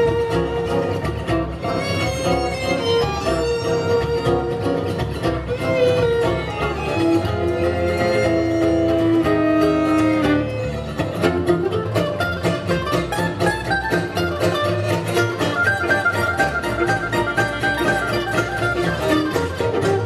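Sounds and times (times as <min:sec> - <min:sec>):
string instrument music: 0:00.0 - 0:20.0.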